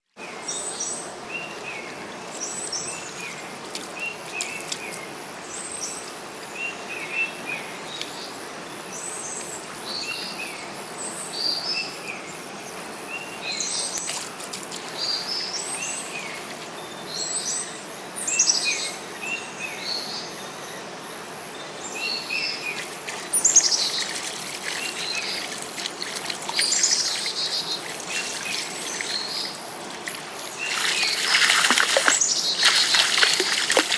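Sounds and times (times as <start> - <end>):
birds singing and chirping: 18.3 - 33.9.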